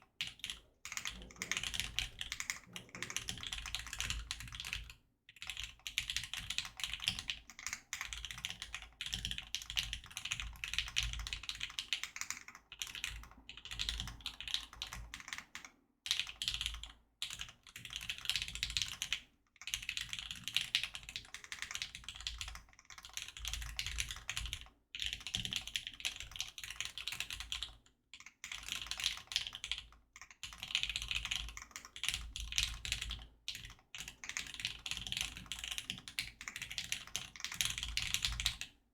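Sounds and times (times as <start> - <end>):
mechanical keyboard typing: 0.2 - 38.7.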